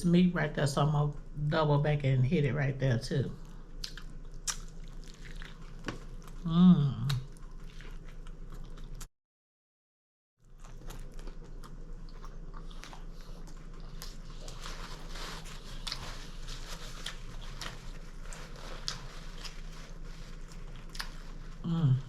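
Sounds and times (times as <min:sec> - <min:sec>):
faint steady hum: 0:00.0 - 0:09.1, 0:10.4 - 0:22.0
close chewing with mouth clicks: 0:03.4 - 0:09.1, 0:10.4 - 0:21.7.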